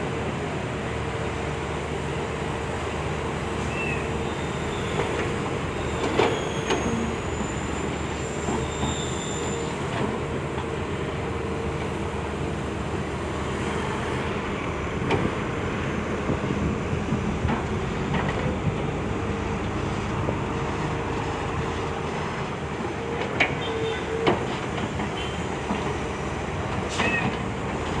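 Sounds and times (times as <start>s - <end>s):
excavator running under load: 0.0s - 28.0s
thin high machinery squeals: 3.6s - 9.8s.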